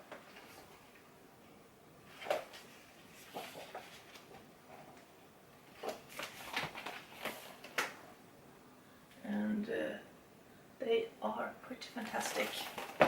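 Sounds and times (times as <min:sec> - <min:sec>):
book pages turning: 0:00.0 - 0:01.0, 0:02.1 - 0:05.1, 0:05.7 - 0:08.0, 0:12.0 - 0:13.0.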